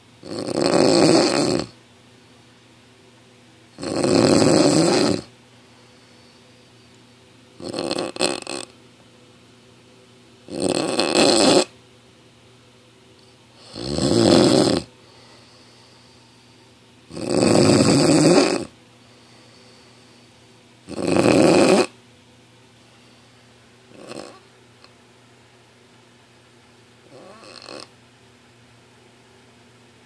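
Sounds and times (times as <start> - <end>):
person snoring loudly: 0.2 - 1.8, 3.8 - 5.3, 7.6 - 8.7, 10.5 - 11.7, 13.6 - 14.9, 17.1 - 18.7, 20.9 - 22.0, 23.9 - 24.4, 27.1 - 27.9
quiet breathing: 5.5 - 7.0, 14.9 - 16.8, 18.9 - 20.6, 22.8 - 23.6.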